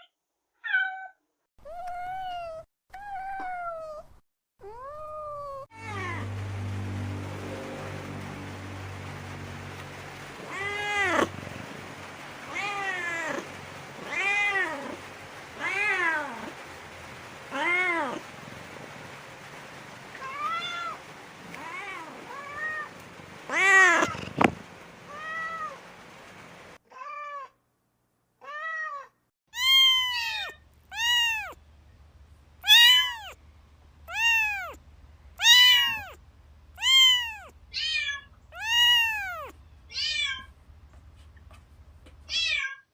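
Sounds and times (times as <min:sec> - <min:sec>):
cat meowing: 0:00.0 - 0:06.3, 0:10.4 - 0:11.4, 0:12.5 - 0:15.0, 0:15.6 - 0:16.6, 0:17.5 - 0:18.2, 0:20.2 - 0:24.5, 0:25.1 - 0:25.8, 0:26.9 - 0:27.6, 0:28.4 - 0:31.6, 0:32.6 - 0:33.4, 0:34.1 - 0:34.8, 0:35.4 - 0:36.2, 0:36.8 - 0:40.5, 0:42.3 - 0:42.9
background hiss: 0:06.0 - 0:26.8, 0:29.6 - 0:42.4.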